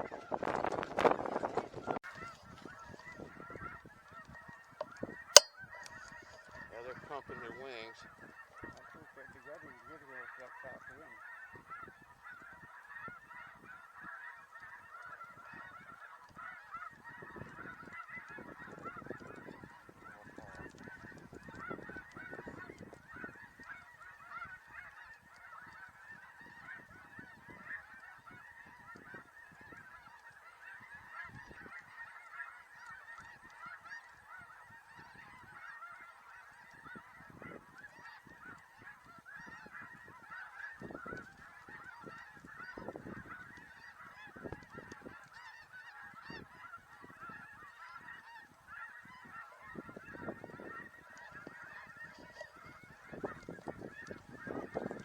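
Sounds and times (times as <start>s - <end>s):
snow geese honking: 0.0s - 55.0s.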